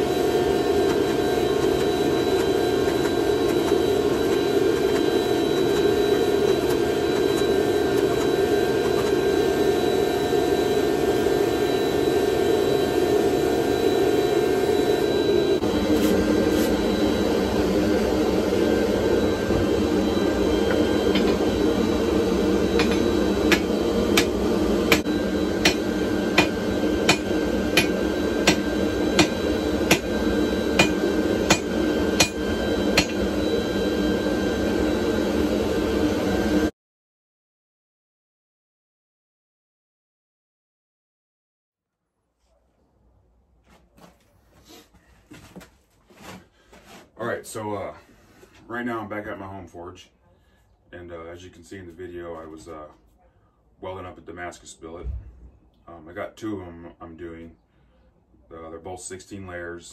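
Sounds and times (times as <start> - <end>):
machine roaring: 0.0 - 36.7
hammer striking hot steel: 20.7 - 21.4, 22.8 - 30.1, 30.7 - 33.2.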